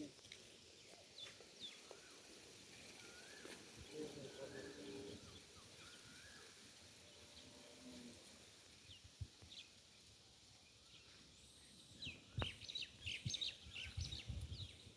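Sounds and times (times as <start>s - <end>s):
bird chirps: 10.9s - 14.9s.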